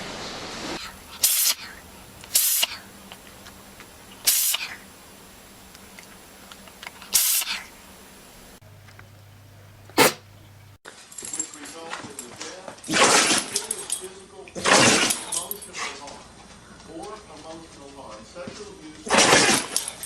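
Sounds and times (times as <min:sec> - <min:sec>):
animal sneezing: 0:09.0 - 0:10.8.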